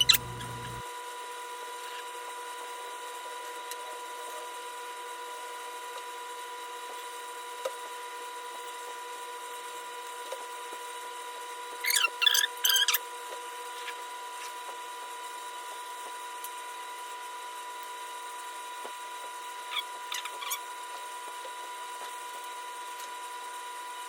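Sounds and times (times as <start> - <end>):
faint electrical whine: 0.0 - 0.8
high chirping squeaks: 0.0 - 0.8, 11.8 - 13.0.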